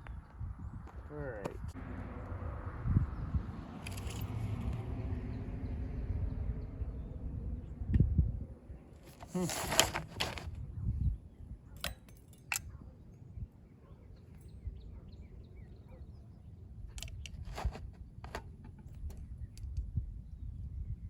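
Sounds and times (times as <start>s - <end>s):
low outdoor rumble: 1.5s - 11.4s.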